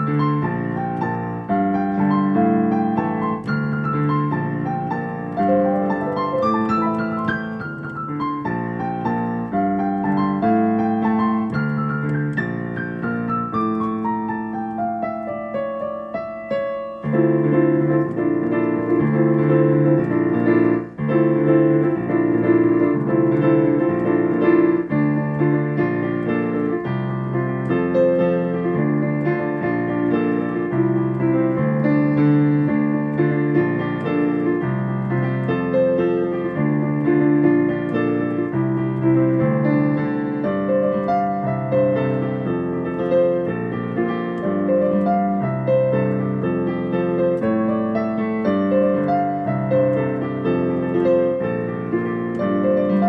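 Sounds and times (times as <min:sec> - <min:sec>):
piano playing: 0:00.0 - 0:53.0.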